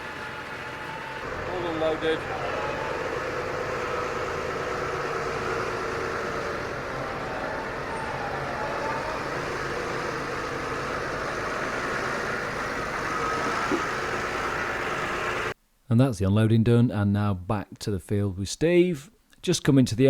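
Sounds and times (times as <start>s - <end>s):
tractor engine running: 0.0s - 15.6s.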